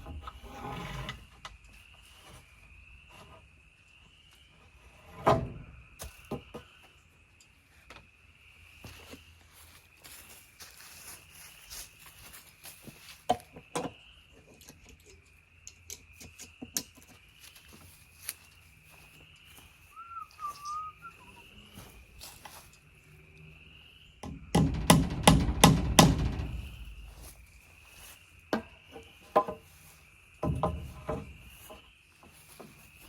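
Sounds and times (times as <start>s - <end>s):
faint high rising call: 19.9s - 22.0s
hammer driving nails into wood: 24.2s - 26.4s.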